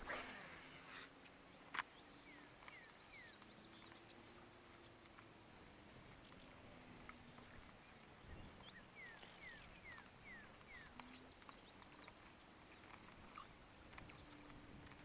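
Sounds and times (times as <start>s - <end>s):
faint whistled bird calls: 8.3s - 12.0s
high bird chirps: 8.3s - 12.1s.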